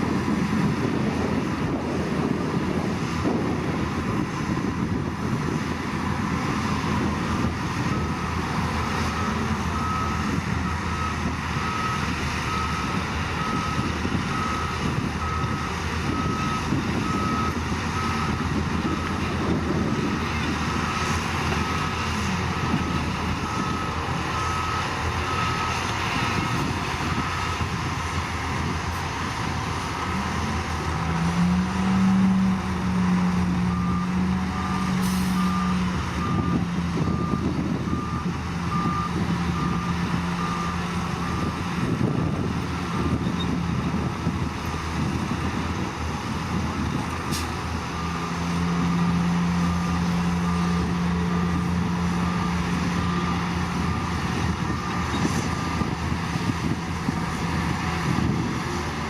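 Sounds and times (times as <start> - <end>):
diesel machine engine running: 0.0 - 59.0
reversing alarm beeps: 7.1 - 27.7, 33.7 - 43.6, 47.9 - 56.0.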